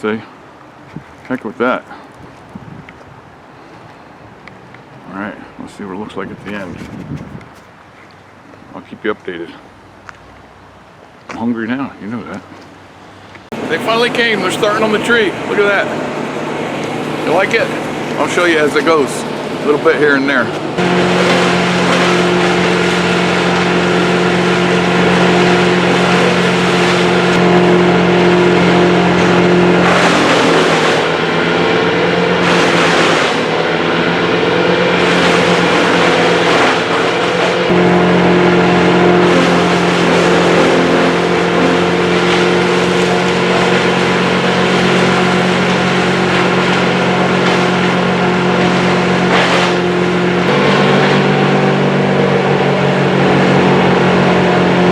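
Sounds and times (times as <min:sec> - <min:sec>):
engine running steadily: 0:13.5 - 0:54.9.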